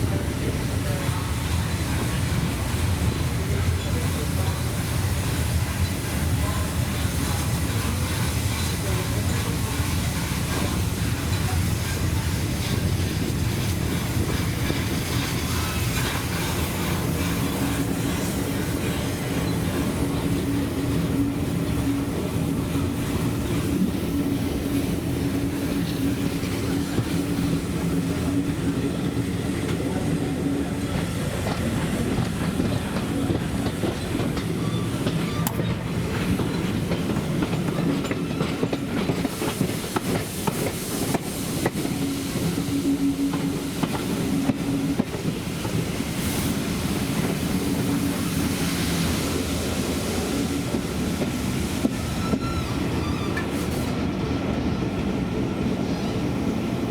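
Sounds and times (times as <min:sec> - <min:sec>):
clickety-clack of rail joints: 0:00.0 - 0:56.9
train wheels rumbling on rail: 0:00.0 - 0:56.9.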